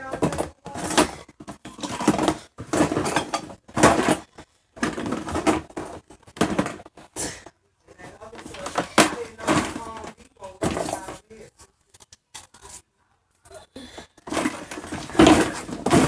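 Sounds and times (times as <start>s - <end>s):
dishes and utensils clattering: 0.0s - 6.9s.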